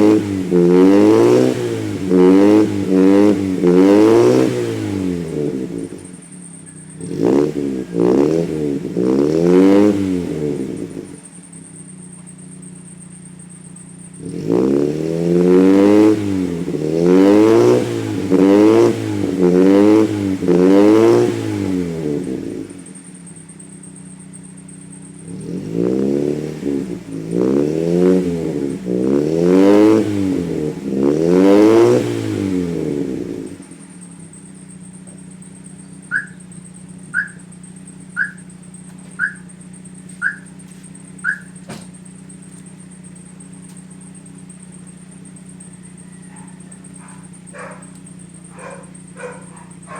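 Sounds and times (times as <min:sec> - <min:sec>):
car engine revving and idling: 0:00.0 - 0:49.9
short high chirps: 0:35.7 - 0:41.7.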